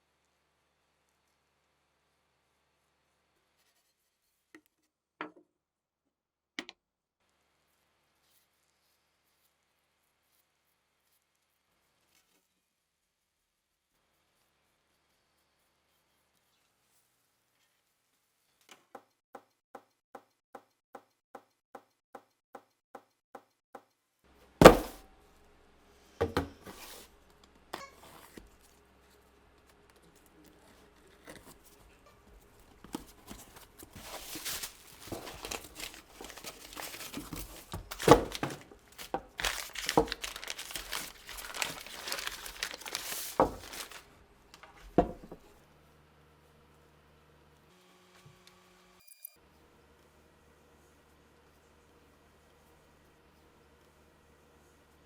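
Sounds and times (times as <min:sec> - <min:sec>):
rustling and handling of parts: 0:24.5 - 0:25.0, 0:26.1 - 0:45.5.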